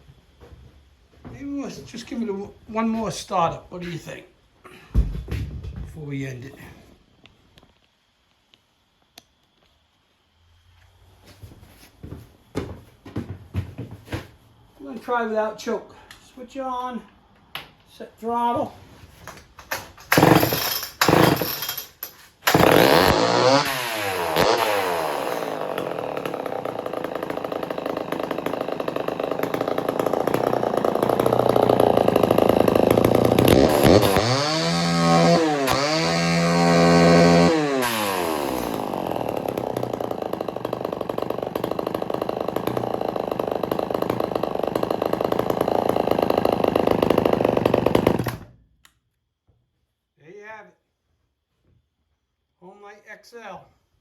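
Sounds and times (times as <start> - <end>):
chainsaw starting and running: 20.0 - 48.6
chainsaw revving: 20.1 - 21.8, 22.4 - 48.5.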